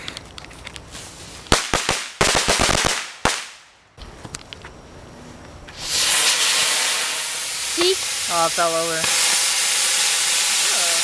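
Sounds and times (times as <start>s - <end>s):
fireworks crackling burst: 0.9s - 3.7s, 5.7s - 11.0s
firecracker pops: 1.5s - 3.7s, 5.7s - 8.0s, 8.9s - 10.6s.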